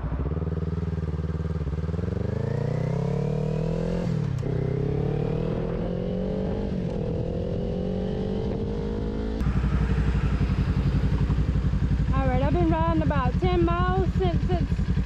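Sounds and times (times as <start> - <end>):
motorcycle engine accelerating: 0.0 - 15.0.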